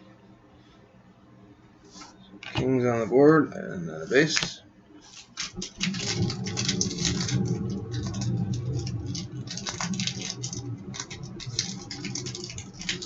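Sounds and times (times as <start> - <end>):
trading cards flipped by hand: 4.3 - 5.8.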